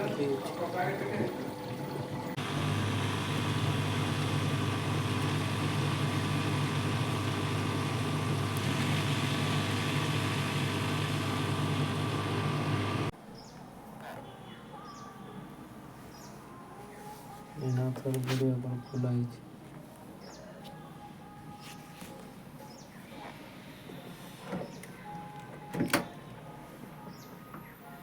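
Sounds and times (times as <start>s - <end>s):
electric motor humming: 2.3s - 13.1s.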